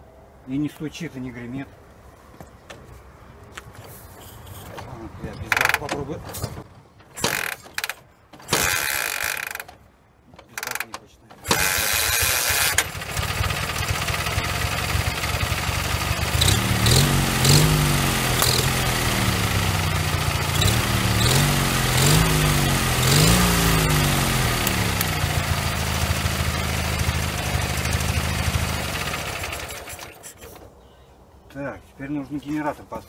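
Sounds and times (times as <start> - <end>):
motorcycle engine revving and idling: 11.5 - 30.0.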